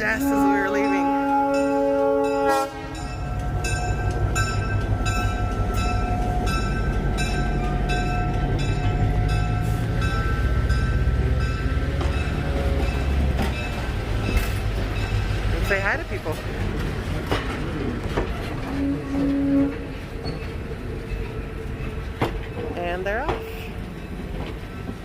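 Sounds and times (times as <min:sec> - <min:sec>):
train horn: 0:00.0 - 0:03.2, 0:18.6 - 0:20.0
locomotive bell striking: 0:00.0 - 0:16.0
train running rumble: 0:00.0 - 0:25.0.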